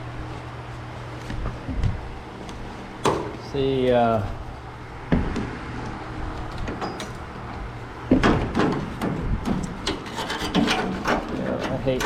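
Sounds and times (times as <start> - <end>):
steady low hum: 0.0 - 12.0
work light knocking and rattling: 8.1 - 12.0.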